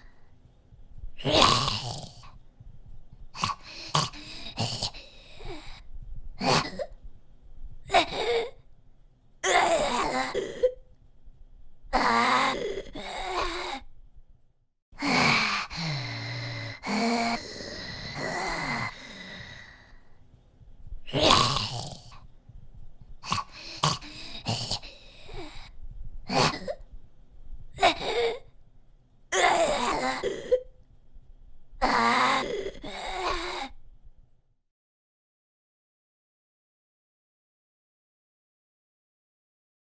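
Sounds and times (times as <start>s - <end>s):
zombie rasping groan: 1.2s - 2.3s, 3.4s - 5.8s, 15.0s - 19.9s, 21.1s - 22.2s, 23.2s - 25.7s, 31.8s - 33.7s
growls: 1.2s - 2.4s, 3.4s - 5.8s, 15.0s - 20.0s, 21.1s - 22.2s, 23.2s - 25.7s, 26.3s - 26.8s, 31.8s - 33.7s
snarls and gasps: 1.2s - 2.4s, 3.4s - 5.8s, 12.0s - 13.8s, 15.0s - 20.1s, 21.1s - 22.2s, 23.2s - 25.7s, 31.8s - 33.8s.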